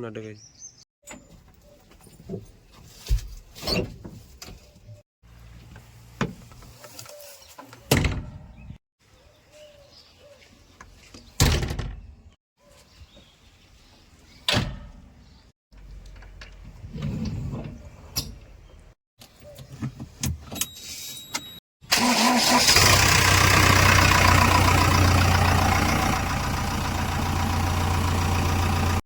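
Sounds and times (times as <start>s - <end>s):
diesel engine hum: 21.9s - 29.0s.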